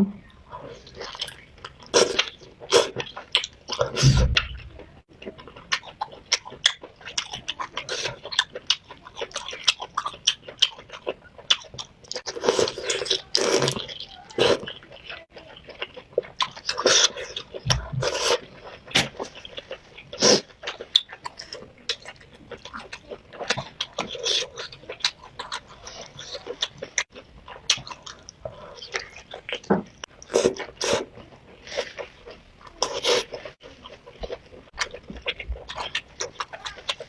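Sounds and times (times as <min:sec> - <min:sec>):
wet chewing and lip-smacking: 0:00.6 - 0:37.0.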